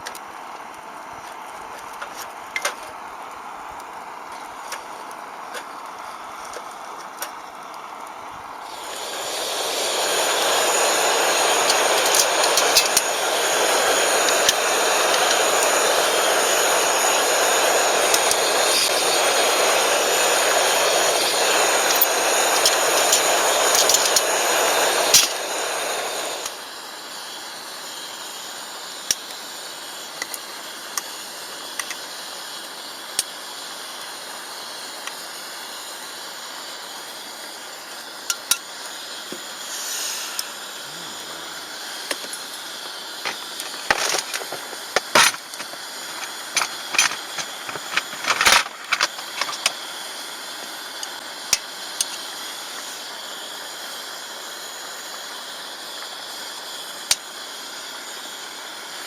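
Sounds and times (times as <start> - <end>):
clicks and crackles: 0.0 - 8.2, 10.2 - 19.3, 20.7 - 25.4, 42.0 - 49.8
loud steady hiss: 0.0 - 59.0.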